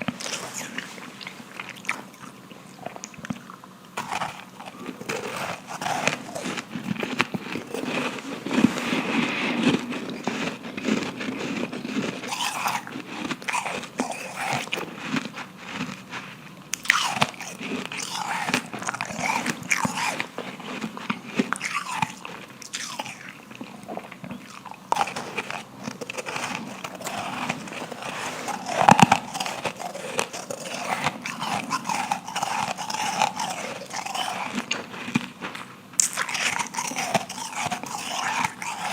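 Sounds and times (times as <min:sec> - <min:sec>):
chewing crunchy ice: 0:00.0 - 0:38.9.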